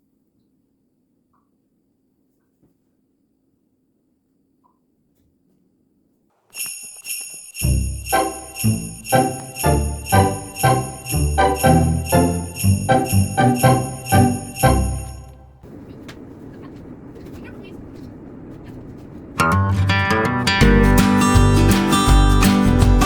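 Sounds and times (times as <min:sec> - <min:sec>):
music with sleigh bells and beat: 0:06.6 - 0:15.4, 0:20.6 - 0:23.0.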